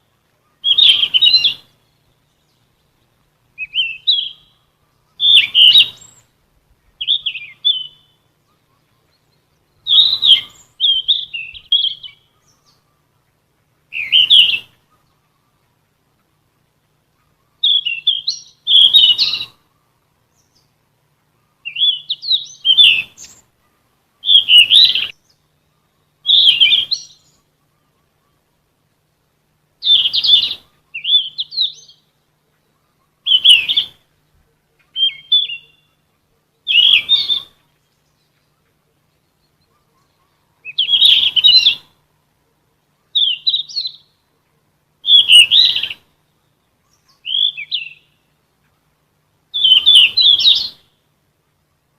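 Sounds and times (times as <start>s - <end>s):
flycatcher twittering song: 0.0s - 15.7s, 16.8s - 23.6s, 24.2s - 28.4s, 29.8s - 42.0s, 43.0s - 44.3s, 45.0s - 48.8s, 49.5s - 51.1s.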